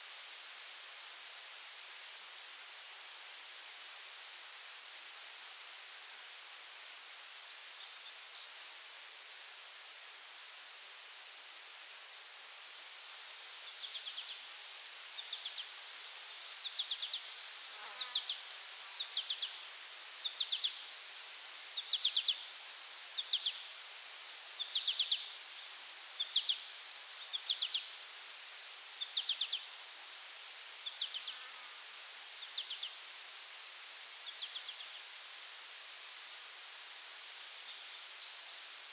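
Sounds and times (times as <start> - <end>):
faint fast insect chirp: 0.0 - 38.9
insects droning: 0.1 - 38.9
trilled insect chirp: 11.7 - 38.9.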